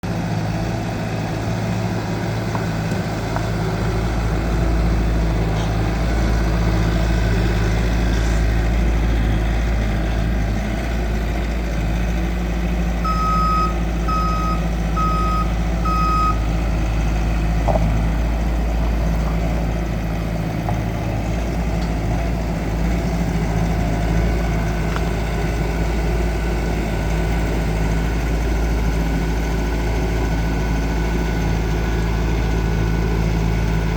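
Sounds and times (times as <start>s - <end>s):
diesel engine running: 0.0s - 33.9s
backup alarm beeps: 13.0s - 16.4s.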